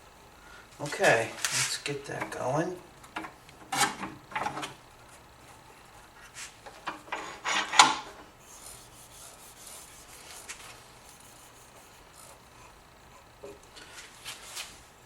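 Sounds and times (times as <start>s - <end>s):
scraping on a workbench: 6.3s - 8.1s.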